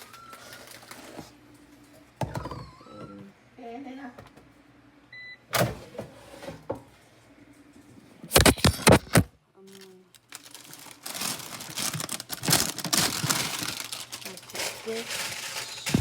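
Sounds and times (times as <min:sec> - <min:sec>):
rustling and crinkling: 0:08.3 - 0:16.0.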